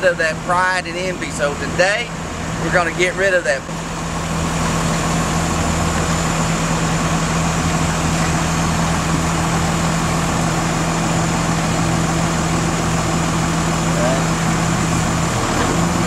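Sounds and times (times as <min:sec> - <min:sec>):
diesel engine running steadily: 0:00.0 - 0:16.0.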